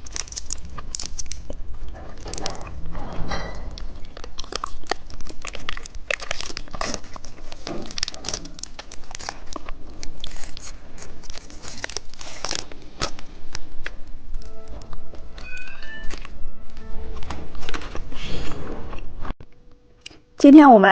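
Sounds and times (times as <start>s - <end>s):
candy being crunched and chewed: 0.0s - 2.7s, 3.7s - 16.3s.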